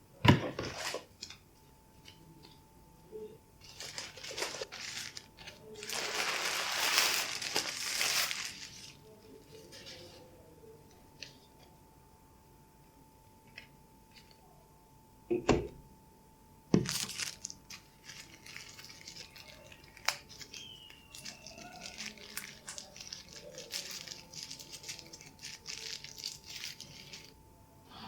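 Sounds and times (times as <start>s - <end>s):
packaging crinkling and rustling: 3.6s - 10.3s, 16.8s - 27.4s.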